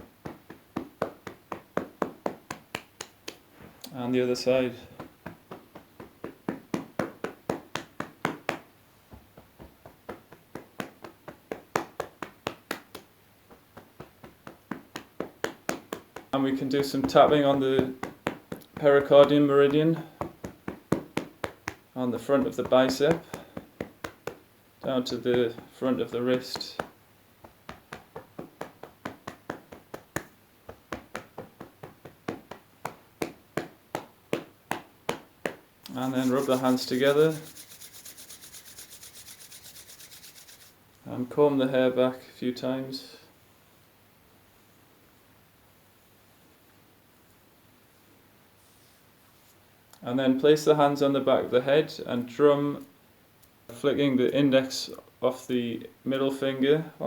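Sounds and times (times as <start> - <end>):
hand tapping on arm: 0.0 - 3.4, 5.0 - 16.4, 17.0 - 21.8, 22.4 - 24.4, 26.3 - 40.7.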